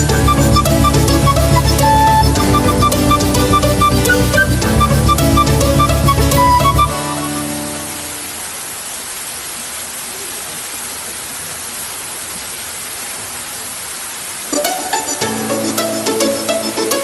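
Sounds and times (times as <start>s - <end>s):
background music: 0.0s - 8.2s, 14.5s - 17.0s
falling water rushing: 0.0s - 17.0s.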